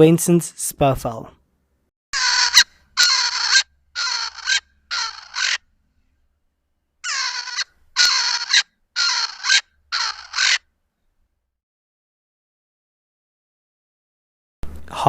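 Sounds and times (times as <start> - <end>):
bird crowing harsh rasping notes: 2.2 - 6.2, 7.0 - 10.7.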